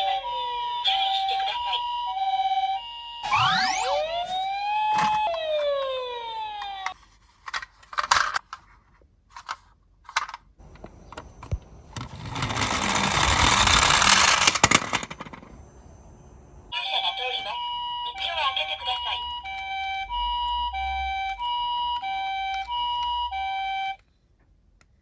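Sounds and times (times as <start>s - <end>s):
toy ambulance siren wailing: 0.0s - 7.0s, 12.2s - 14.5s, 16.7s - 24.0s
toy car rolling down a slope: 11.8s - 15.5s.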